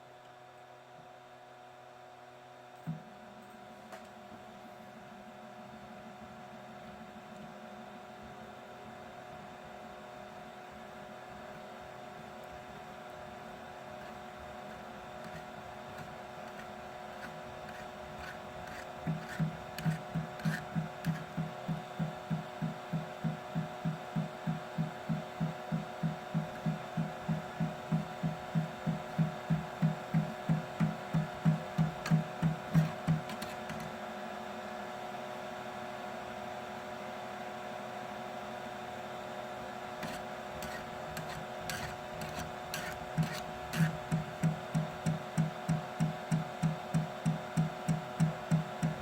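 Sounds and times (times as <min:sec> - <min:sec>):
steady motor hum: 0:04.2 - 0:49.0
printer extruder knocking: 0:14.0 - 0:33.9, 0:40.0 - 0:49.0.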